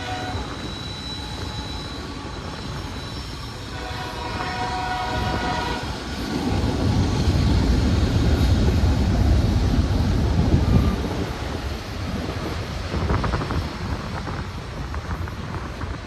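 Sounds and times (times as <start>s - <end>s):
locomotive engines rumbling: 0.0s - 16.0s
locomotive horn chord: 3.7s - 5.8s.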